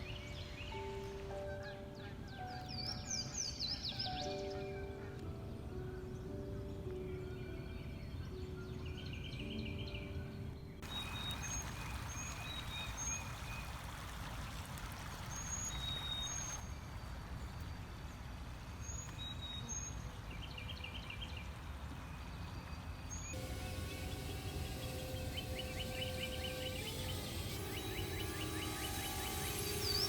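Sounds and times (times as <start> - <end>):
birds chirping and trilling: 0.0 - 14.3, 23.0 - 30.0
stream rushing: 10.8 - 16.6.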